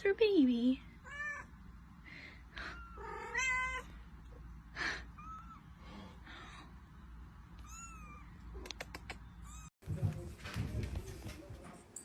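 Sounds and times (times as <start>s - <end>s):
cat meowing: 2.6s - 3.9s, 7.6s - 8.4s.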